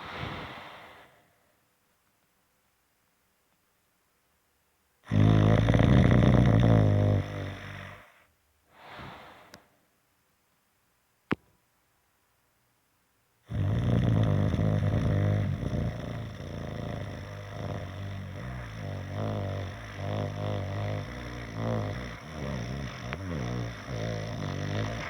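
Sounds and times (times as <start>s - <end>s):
soft breath: 0.0s - 1.7s, 7.2s - 9.9s, 14.6s - 25.0s
person snoring: 5.1s - 8.2s, 8.8s - 9.6s, 13.5s - 25.0s.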